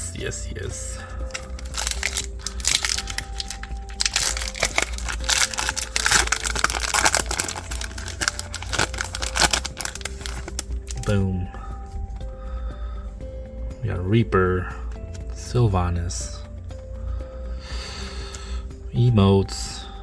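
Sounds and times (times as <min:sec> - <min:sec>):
faint background music: 0:00.0 - 0:20.0
foil wrapper crinkling: 0:01.2 - 0:11.1
cards being shuffled: 0:01.3 - 0:11.1.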